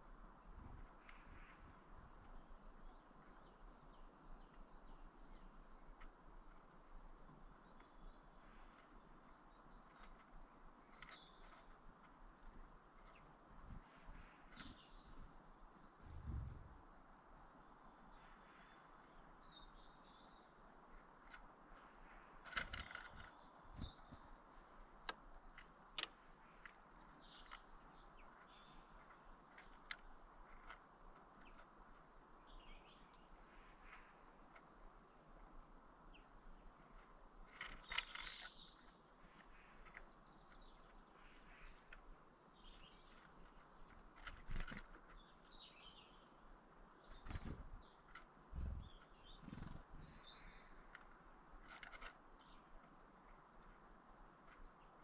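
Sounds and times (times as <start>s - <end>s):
small birds chirping: 0.0s - 55.0s
low thumps: 48.6s - 49.0s.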